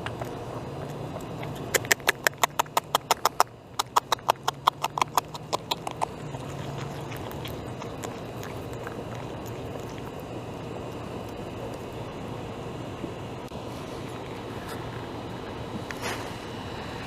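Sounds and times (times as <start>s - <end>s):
beaver gnawing bark: 0.0s - 12.8s.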